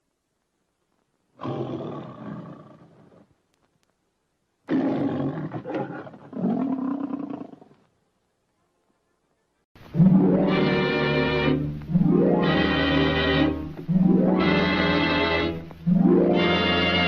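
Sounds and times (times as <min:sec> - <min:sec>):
lion roaring: 0:04.7 - 0:07.8.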